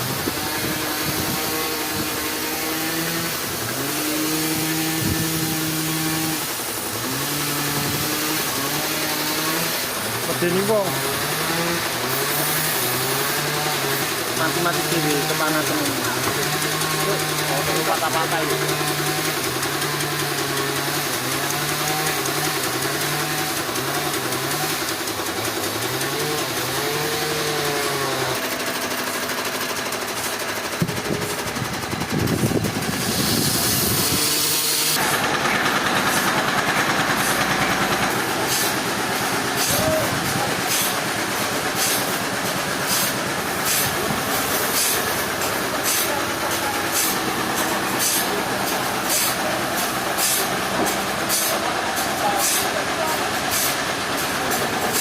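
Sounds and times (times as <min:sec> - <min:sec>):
dense steady mechanical noise: 0:00.0 - 0:55.0
sawmill engine revving: 0:00.0 - 0:55.0.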